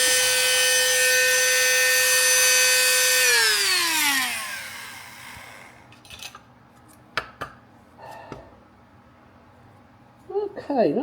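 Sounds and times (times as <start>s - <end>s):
power tool motor spinning down: 0.0s - 5.8s.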